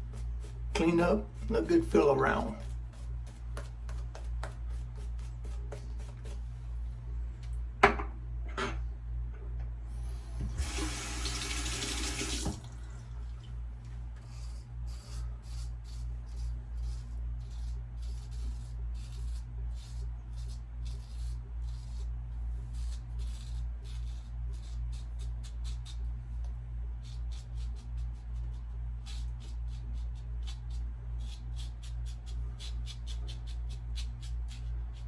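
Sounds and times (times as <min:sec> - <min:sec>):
steady low hum: 0:00.0 - 0:35.0
razor scraping stubble: 0:13.9 - 0:26.1.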